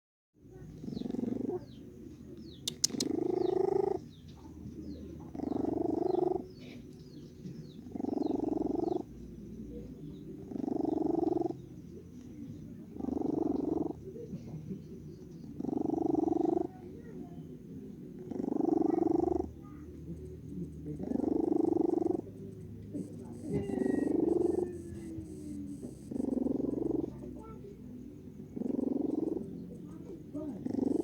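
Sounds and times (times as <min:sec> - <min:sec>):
cat snoring: 0:00.6 - 0:01.8, 0:02.8 - 0:04.2, 0:05.2 - 0:07.0, 0:07.6 - 0:11.8, 0:12.9 - 0:17.1, 0:18.1 - 0:31.0
sharp click: 0:02.7 - 0:03.2
faint high chirps: 0:18.8 - 0:31.0.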